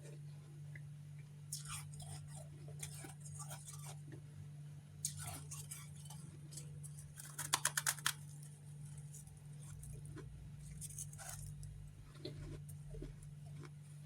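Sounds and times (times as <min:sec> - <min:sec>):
steady low hum: 0:00.0 - 0:14.0
crunching of frost being chewed: 0:01.5 - 0:04.3, 0:05.0 - 0:14.0.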